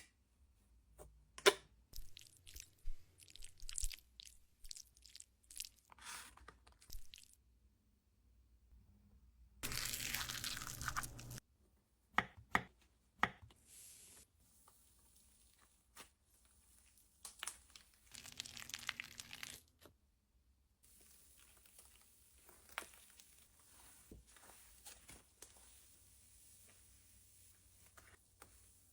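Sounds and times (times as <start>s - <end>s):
slime crackling and crinkling: 2.0s - 5.9s, 9.6s - 11.4s, 16.8s - 19.7s, 20.9s - 26.0s.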